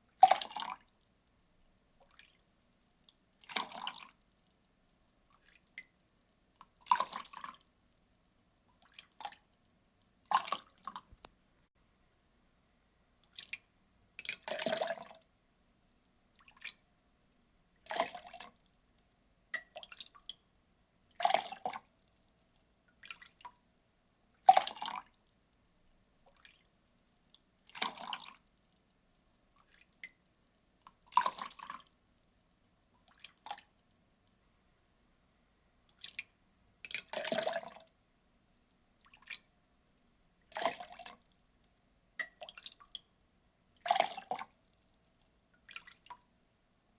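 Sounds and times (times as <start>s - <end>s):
water dripping: 0.0s - 11.4s, 13.2s - 34.4s, 35.9s - 46.9s
water pouring in splashes: 3.4s - 4.2s, 17.8s - 18.6s, 21.2s - 21.8s, 24.4s - 25.1s, 27.6s - 28.4s, 31.0s - 31.9s, 36.8s - 37.9s, 40.5s - 41.2s, 43.8s - 44.5s.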